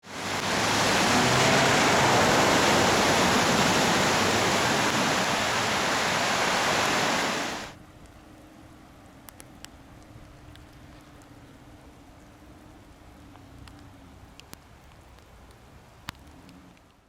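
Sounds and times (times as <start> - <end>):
rush of running water: 0.0 - 7.8.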